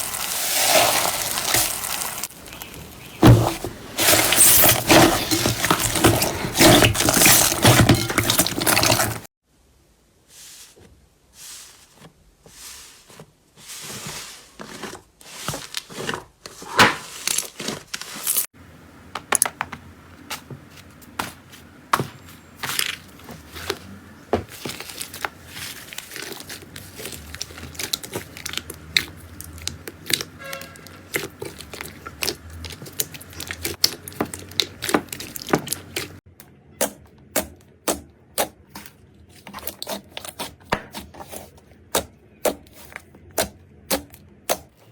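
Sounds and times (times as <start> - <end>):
slime crackling and popping: 24.7 - 36.2.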